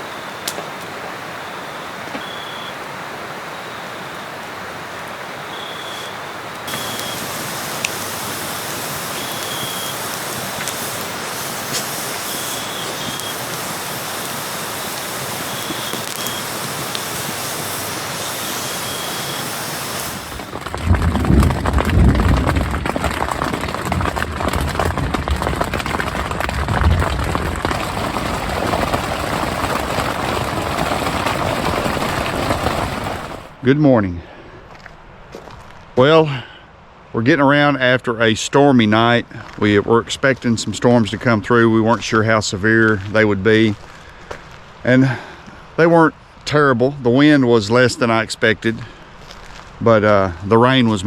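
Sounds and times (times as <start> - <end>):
running water: 1.4 - 33.6.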